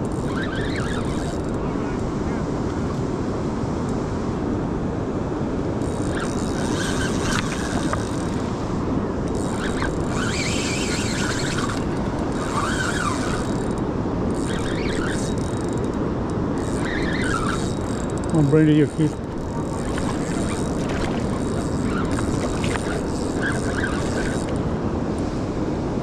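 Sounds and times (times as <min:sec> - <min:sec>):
river water rushing: 0:06.1 - 0:26.0.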